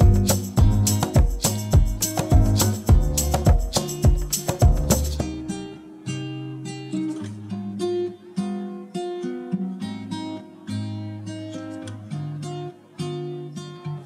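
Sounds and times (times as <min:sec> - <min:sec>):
sustained bass notes: 0:00.0 - 0:05.4
acoustic guitar plucked notes: 0:00.0 - 0:14.0.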